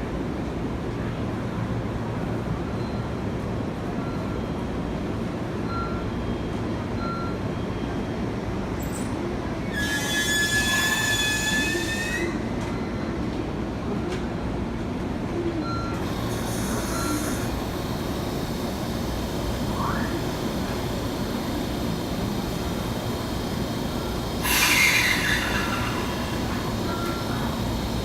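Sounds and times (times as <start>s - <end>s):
train rumbling on rails: 0.0s - 28.0s
high-pitched wheel squeal: 9.7s - 12.5s, 24.4s - 27.2s.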